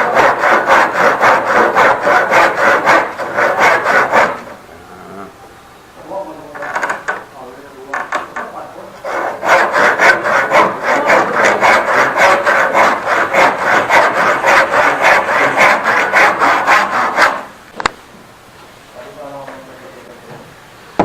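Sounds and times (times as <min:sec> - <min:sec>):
handsaw cutting wood: 0:00.0 - 0:04.6, 0:09.0 - 0:17.5.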